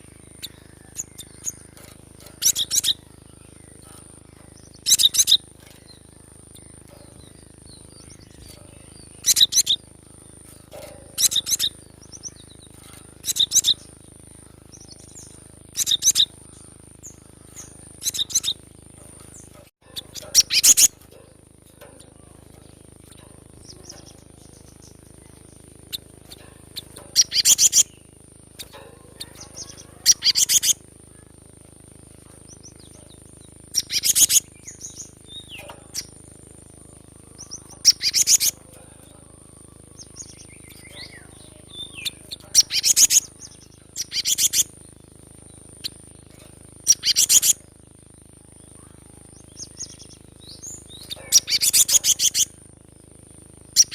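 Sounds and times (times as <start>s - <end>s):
bird harsh rapid calls: 0.0s - 4.0s, 4.6s - 7.2s, 7.9s - 13.9s, 14.7s - 18.6s, 19.2s - 21.4s, 25.9s - 28.0s, 28.6s - 30.8s, 33.7s - 36.2s, 37.3s - 38.7s, 40.0s - 44.8s, 46.8s - 47.6s, 49.6s - 52.6s
small bird chirps: 0.0s - 53.9s
thin high-pitched whine: 0.0s - 53.9s.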